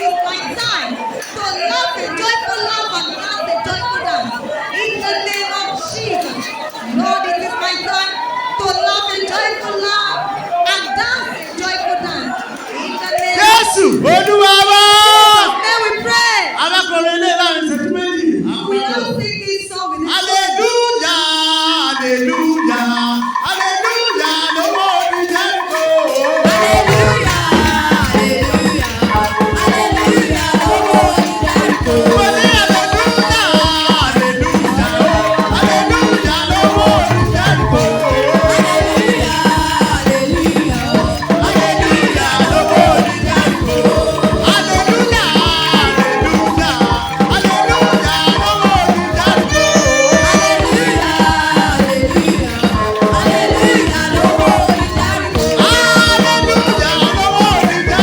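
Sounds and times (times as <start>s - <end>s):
church praise band playing: 0.0s - 58.0s
voices singing: 0.0s - 58.0s
shaker rattle: 20.2s - 58.0s.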